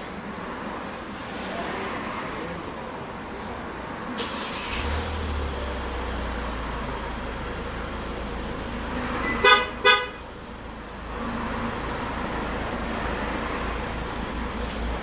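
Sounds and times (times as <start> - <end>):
car engine cranking and idling: 4.2 - 15.0.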